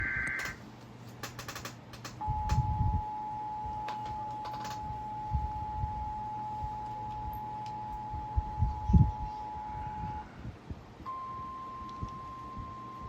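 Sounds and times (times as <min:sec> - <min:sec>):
data burst tones: 0:00.0 - 0:00.6
two-tone alert signal: 0:11.1 - 0:13.0.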